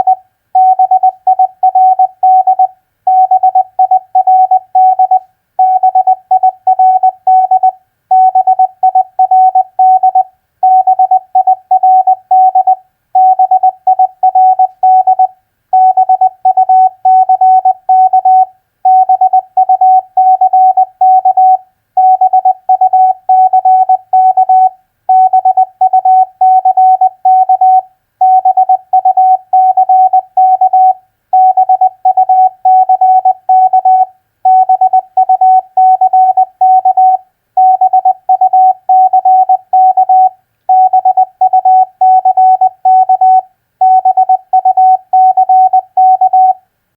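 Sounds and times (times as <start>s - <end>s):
morse code tone: 0.0s - 46.6s.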